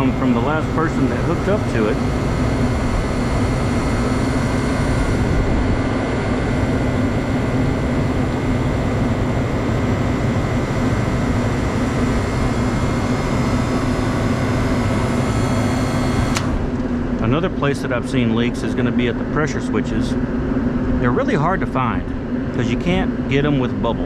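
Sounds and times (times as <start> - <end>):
freezer condensing unit droning: 0.0 - 24.0.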